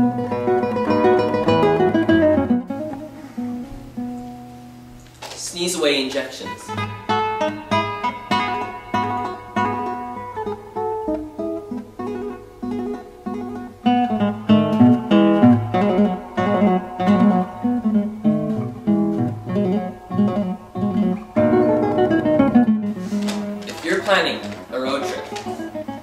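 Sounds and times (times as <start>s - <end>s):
acoustic guitar music: 0.0s - 26.0s.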